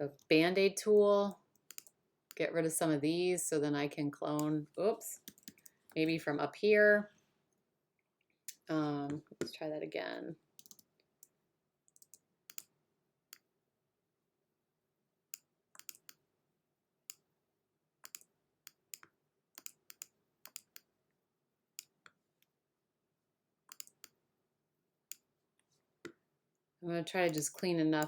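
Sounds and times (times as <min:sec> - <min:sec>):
computer mouse clicking: 0:01.6 - 0:02.0, 0:05.2 - 0:06.0, 0:10.6 - 0:11.3, 0:11.9 - 0:12.7, 0:15.4 - 0:16.2, 0:18.0 - 0:20.9, 0:23.7 - 0:24.2, 0:27.3 - 0:27.7.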